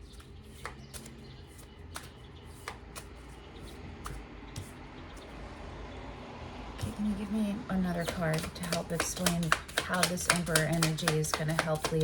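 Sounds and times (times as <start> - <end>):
cards snapping while shuffled: 0.1 - 3.3, 4.0 - 4.7, 8.0 - 12.0.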